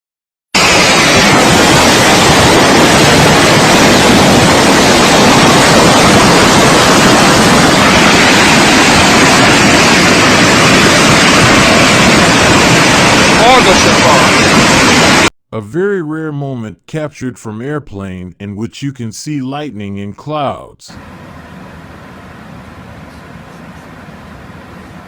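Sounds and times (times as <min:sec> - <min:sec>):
raging flood water rushing: 0:00.6 - 0:15.2.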